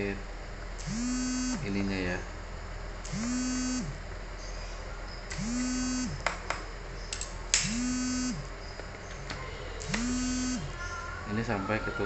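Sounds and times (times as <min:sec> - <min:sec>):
buzzy held tone: 0:00.8 - 0:01.9, 0:03.0 - 0:04.1, 0:05.3 - 0:06.2, 0:07.6 - 0:08.6, 0:09.8 - 0:10.8.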